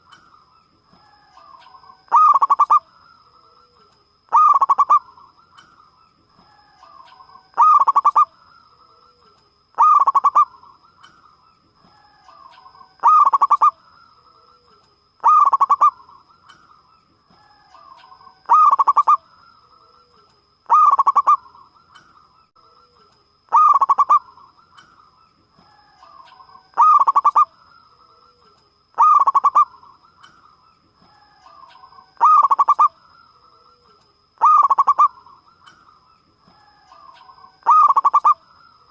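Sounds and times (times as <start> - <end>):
faint steady high tone: 0.0 - 38.9
dove cooing: 1.0 - 2.9, 3.6 - 5.3, 6.5 - 8.3, 9.0 - 10.7, 12.0 - 13.8, 14.6 - 16.2, 17.4 - 19.2, 19.8 - 21.7, 22.9 - 24.5, 25.7 - 27.5, 29.0 - 30.0, 31.1 - 33.0, 33.8 - 35.5, 36.6 - 38.4.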